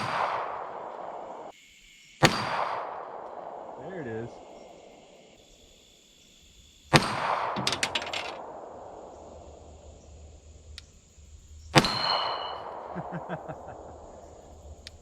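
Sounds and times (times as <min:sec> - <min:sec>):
pistol shots echoing: 0:00.0 - 0:01.5, 0:02.2 - 0:05.1, 0:06.9 - 0:09.8, 0:11.8 - 0:14.2
metallic clinks: 0:07.6 - 0:08.4.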